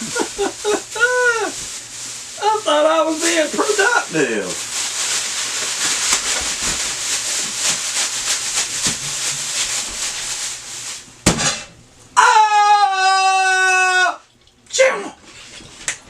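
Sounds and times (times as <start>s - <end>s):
bag rustling shake: 0.0s - 11.2s.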